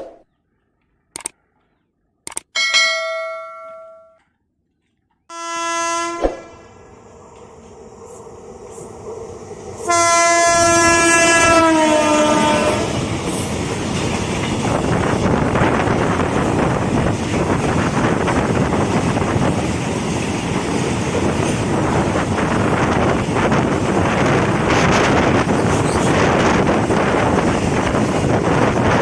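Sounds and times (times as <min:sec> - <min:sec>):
locomotive horn blasts: 0:05.3 - 0:06.6, 0:09.8 - 0:13.0
train wheels clattering on rails: 0:12.4 - 0:29.0.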